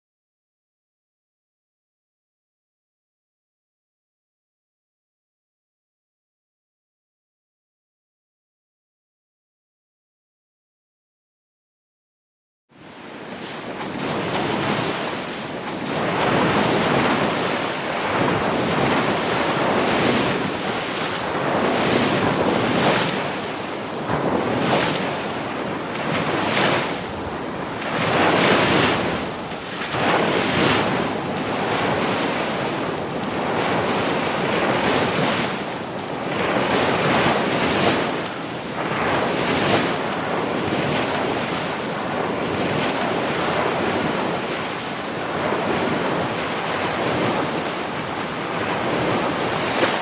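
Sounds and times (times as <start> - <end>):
ocean waves breaking: 12.8 - 50.0.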